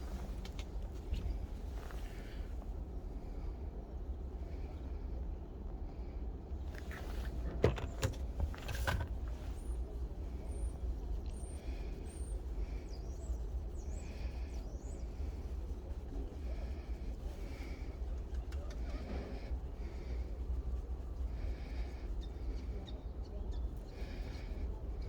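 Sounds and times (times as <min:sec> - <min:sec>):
steady low rumble: 0:00.0 - 0:25.0
light metal clicks: 0:06.7 - 0:09.6.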